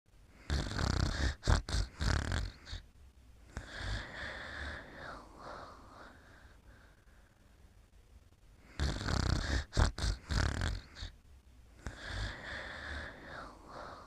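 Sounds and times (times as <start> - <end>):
person snoring: 0.3 - 2.8, 3.5 - 6.5, 8.6 - 11.1, 11.8 - 14.0.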